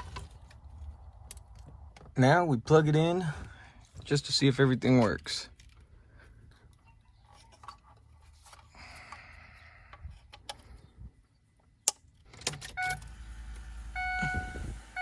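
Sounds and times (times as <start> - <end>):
connectors clicking and rustling: 4.8 - 10.9
low electrical hum: 12.8 - 15.0
short electronic tone: 13.9 - 15.0.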